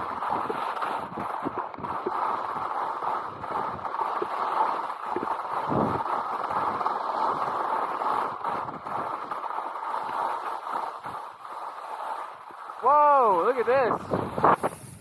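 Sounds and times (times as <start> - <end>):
skis scraping over snow: 0.0 - 15.0
wind on microphone: 5.2 - 7.5, 13.7 - 15.0.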